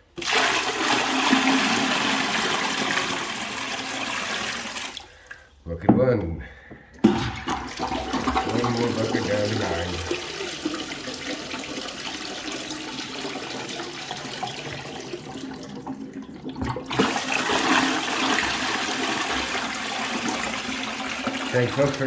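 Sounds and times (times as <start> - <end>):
water pouring into toilet bowl: 0.0 - 5.5, 7.0 - 22.0.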